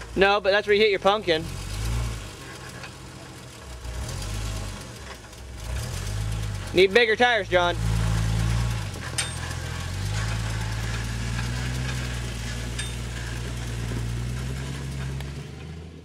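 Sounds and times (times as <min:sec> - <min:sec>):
car engine running at low revs: 0:00.0 - 0:16.0
sharp metallic clicks: 0:08.7 - 0:13.7.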